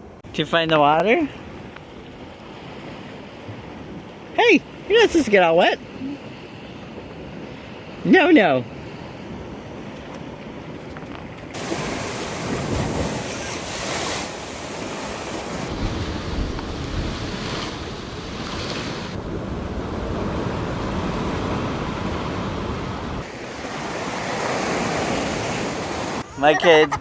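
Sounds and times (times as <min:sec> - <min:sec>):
rushing water: 0:00.8 - 0:15.9, 0:23.2 - 0:26.9
wind buffeting microphone: 0:01.1 - 0:26.3.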